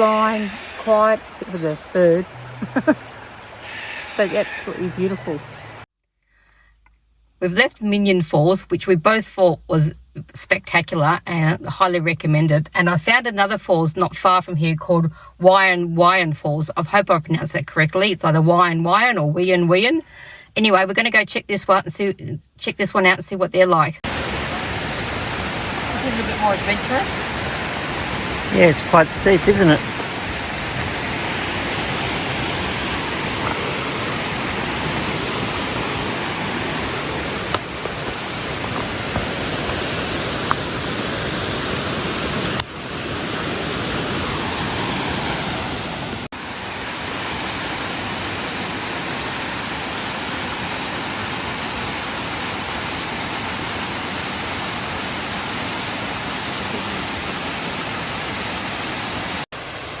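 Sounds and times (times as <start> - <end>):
waterfall rushing: 0.0 - 5.8, 24.0 - 60.0.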